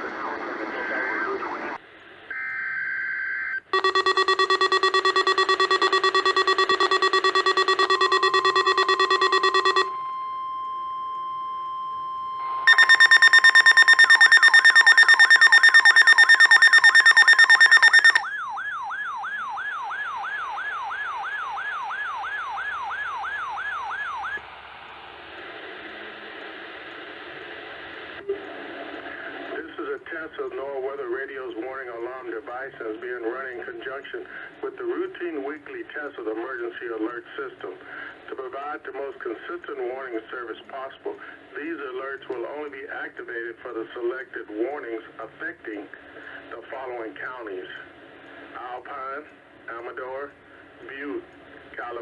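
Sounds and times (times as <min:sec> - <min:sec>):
loud buzzing alarm: 0:03.7 - 0:10.1, 0:12.7 - 0:18.3
steady warning tone: 0:03.7 - 0:18.2
pulsing alarm: 0:03.7 - 0:18.9.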